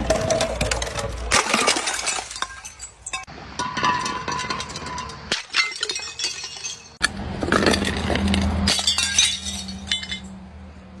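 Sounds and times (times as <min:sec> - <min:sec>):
glass bottles smashing: 0:00.0 - 0:10.4
glass shards clinking: 0:00.4 - 0:10.4.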